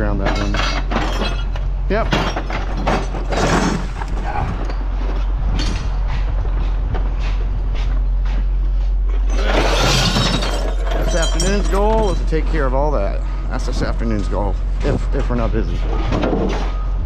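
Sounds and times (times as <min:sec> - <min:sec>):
scrap metal clinking and clattering: 0:00.0 - 0:05.9, 0:09.1 - 0:12.8
low engine hum: 0:01.4 - 0:09.3.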